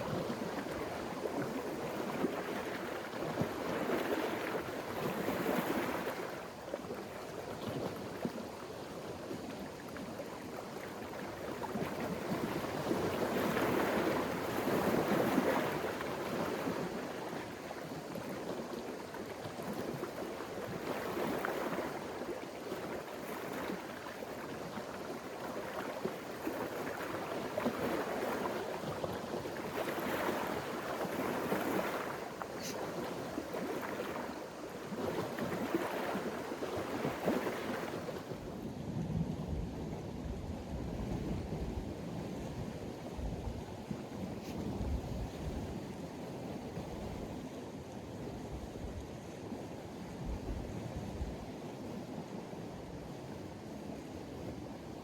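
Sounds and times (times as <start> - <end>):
wind: 0.0 - 55.0
waves washing in: 19.6 - 38.7.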